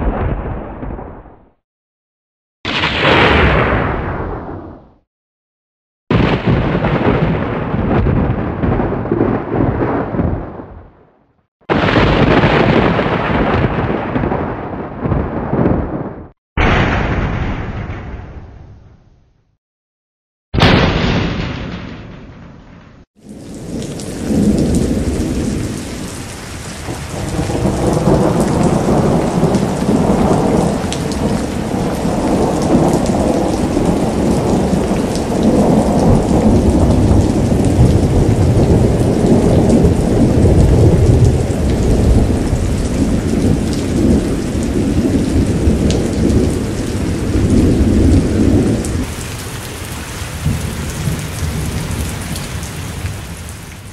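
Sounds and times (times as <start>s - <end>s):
rolling thunder: 0.0s - 1.6s, 2.7s - 5.0s, 6.1s - 11.1s, 11.7s - 18.8s, 20.6s - 53.3s
heavy rain: 6.1s - 10.7s, 11.7s - 16.3s, 23.2s - 53.9s.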